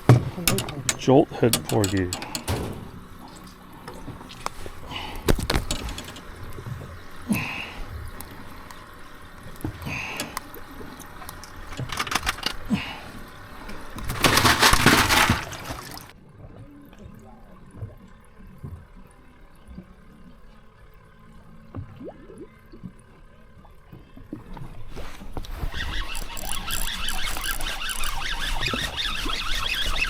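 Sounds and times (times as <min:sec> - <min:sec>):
water sloshing and splashing: 0:00.0 - 0:19.0, 0:23.9 - 0:30.0
knocks and clatter: 0:14.0 - 0:16.0.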